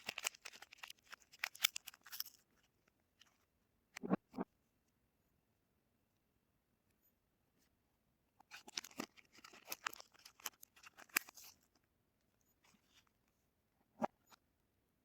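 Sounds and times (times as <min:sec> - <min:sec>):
wrapper crackling and tearing: 0:00.0 - 0:02.4, 0:08.5 - 0:11.6.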